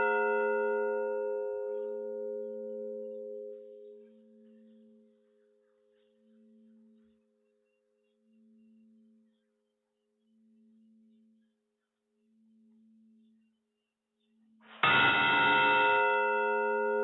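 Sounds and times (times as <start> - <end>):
low sustained ringing tone: 0.0 - 9.5.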